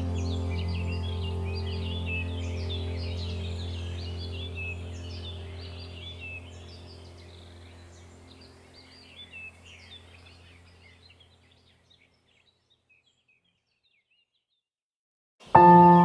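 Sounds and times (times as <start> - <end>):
low steady drone: 0.0 - 11.0
small birds chirping: 0.0 - 14.7.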